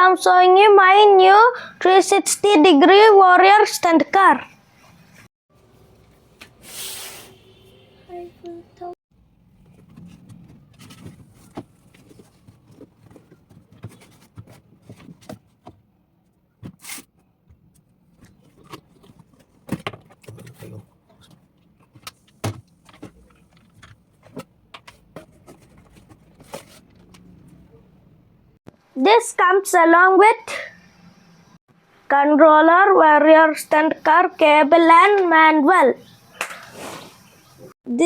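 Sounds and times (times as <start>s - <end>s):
packaging rustling and scraping: 9.5s - 15.7s, 18.1s - 27.5s.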